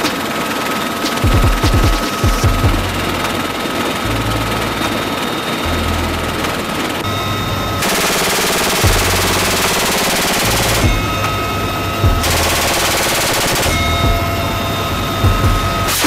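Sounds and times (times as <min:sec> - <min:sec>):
low rumble: 0:08.8 - 0:09.7, 0:10.4 - 0:13.0.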